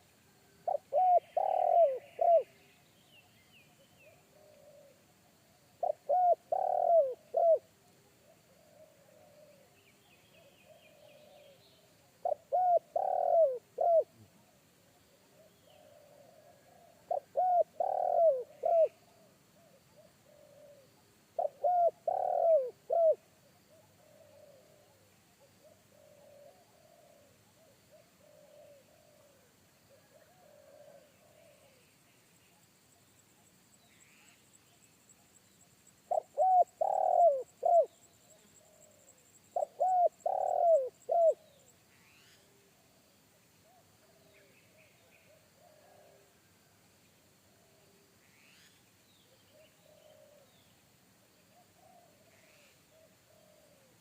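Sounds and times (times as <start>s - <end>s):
dove cooing: 0.0s - 2.6s, 4.0s - 5.1s, 5.8s - 9.8s, 12.2s - 14.4s, 15.2s - 31.8s, 36.1s - 41.7s, 45.1s - 46.4s, 49.5s - 50.6s, 51.5s - 54.0s
faint dove coos: 0.0s - 54.0s.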